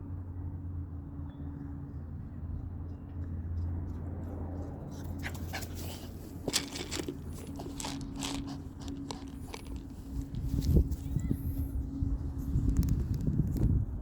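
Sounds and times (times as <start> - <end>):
dog panting: 5.0 - 9.9.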